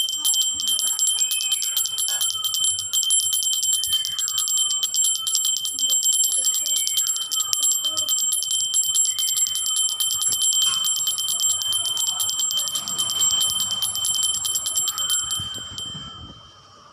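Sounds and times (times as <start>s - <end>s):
temple bell ringing rapidly: 0.0s - 16.4s.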